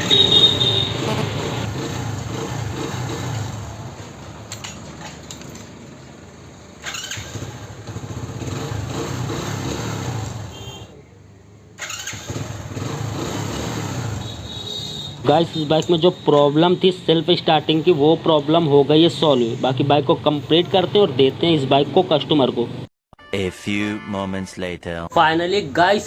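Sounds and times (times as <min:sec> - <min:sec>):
motorcycle engine running: 0:00.0 - 0:04.2, 0:06.8 - 0:10.2
starter motor cranking: 0:06.8 - 0:08.0, 0:11.8 - 0:12.9.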